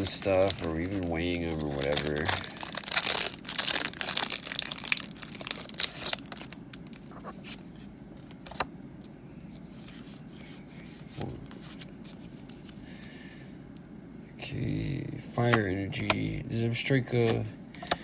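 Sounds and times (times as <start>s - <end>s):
cards rubbing and clicking: 0.0s - 2.5s, 15.2s - 16.4s, 17.1s - 18.0s
foil wrapper crinkling and tearing: 0.0s - 7.6s.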